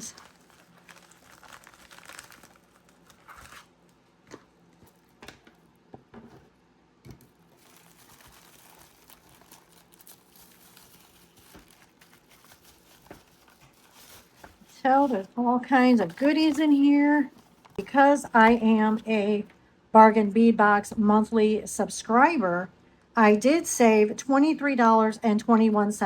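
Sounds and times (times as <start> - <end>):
packaging crinkling: 0.0 - 5.5, 7.2 - 17.8.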